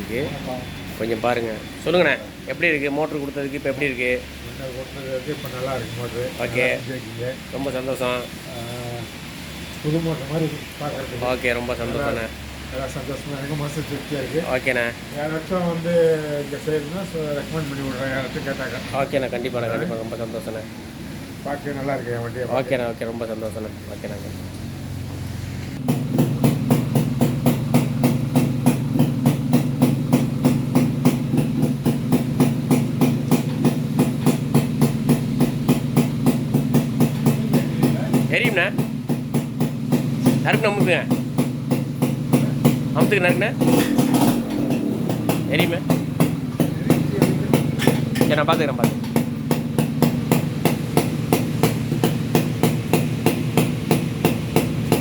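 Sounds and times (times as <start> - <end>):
motorcycle engine idling: 25.8 - 55.0.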